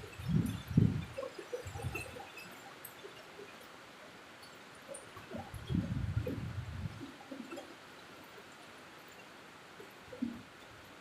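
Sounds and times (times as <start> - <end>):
wind gusts on microphone: 0.0 - 2.1, 5.5 - 7.1.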